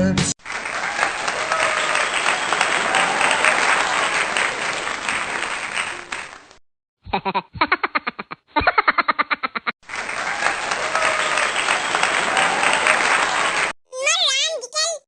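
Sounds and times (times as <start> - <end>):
crowd applause: 0.4 - 6.6, 9.8 - 13.8.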